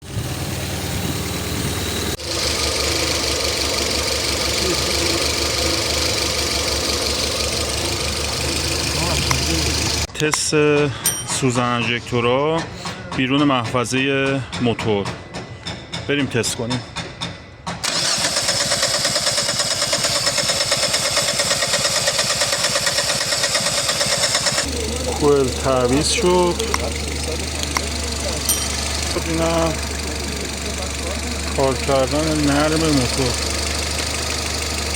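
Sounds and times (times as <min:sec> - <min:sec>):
car engine idling roughly: 0:00.0 - 0:10.1, 0:17.8 - 0:34.9.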